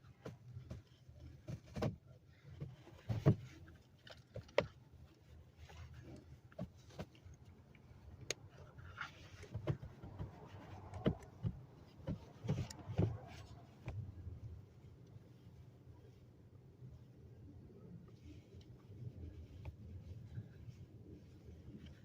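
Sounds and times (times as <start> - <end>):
seatbelt parts clicking and knocking: 0.0 - 14.1
low steady hum: 0.0 - 22.0.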